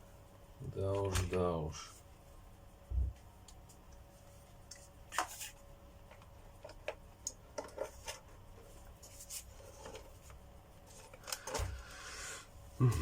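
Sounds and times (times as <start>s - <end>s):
plastic parts clicking and scraping: 5.1s - 8.3s, 9.0s - 11.8s.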